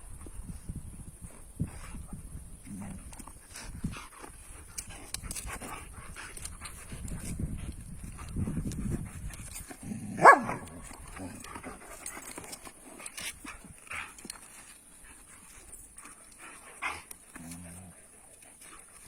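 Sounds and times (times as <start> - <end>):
dog barking: 10.2 - 10.6.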